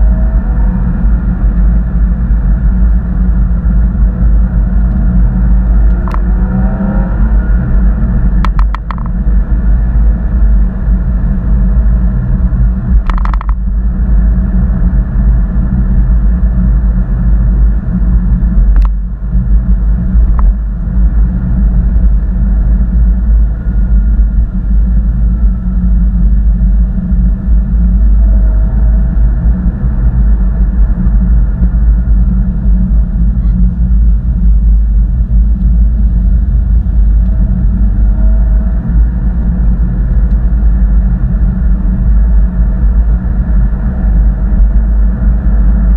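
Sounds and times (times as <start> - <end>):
car engine rumble and buzz: 0.0 - 45.9.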